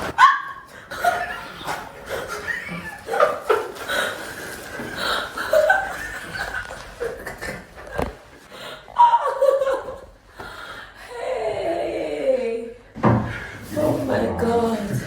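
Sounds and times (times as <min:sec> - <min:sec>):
woman laughing: 0:09.0 - 0:10.1.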